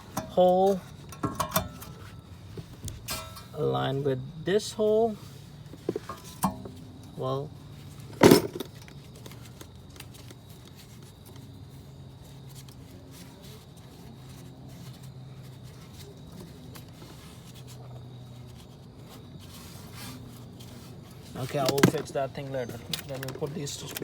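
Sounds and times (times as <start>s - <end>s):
steady low hum: 0.0s - 24.0s
faint clicks and handling noises: 5.6s - 24.0s.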